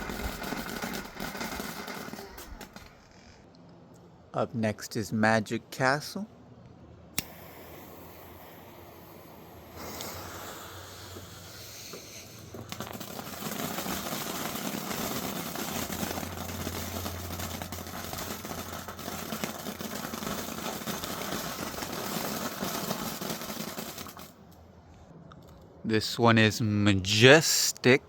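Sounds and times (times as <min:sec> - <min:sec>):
firework fountain hissing and crackling: 0:00.0 - 0:03.2, 0:07.2 - 0:24.5.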